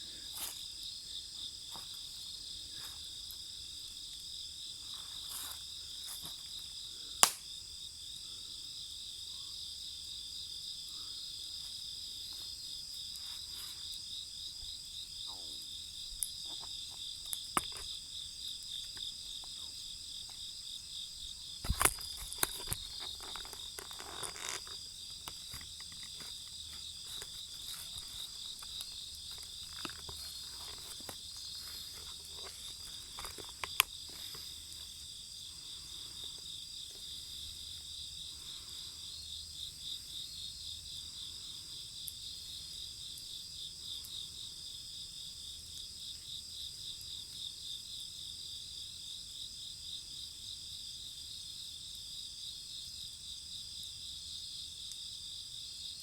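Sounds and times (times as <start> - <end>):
crickets trilling: 0.0 - 56.0
campfire crackling and popping: 7.2 - 7.5.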